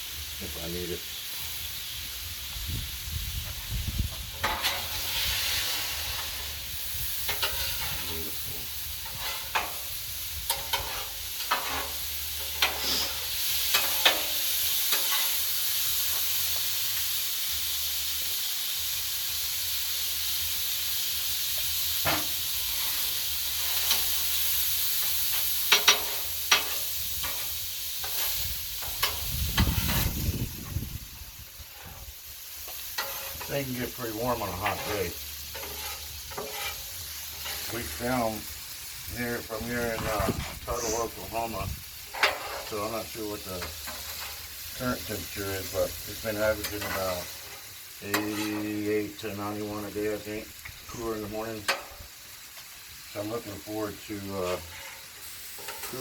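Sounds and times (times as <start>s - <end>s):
meat sizzling on a griddle: 0.0s - 56.0s
metal utensil scraping griddle: 4.2s - 16.8s, 22.0s - 30.8s, 31.5s - 52.0s, 53.1s - 56.0s.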